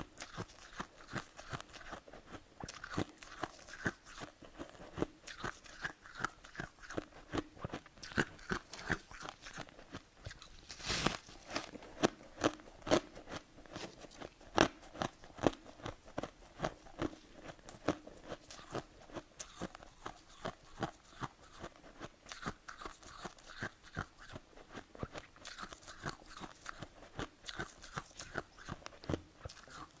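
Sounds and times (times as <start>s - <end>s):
chewing crunchy frost: 0.0s - 30.0s.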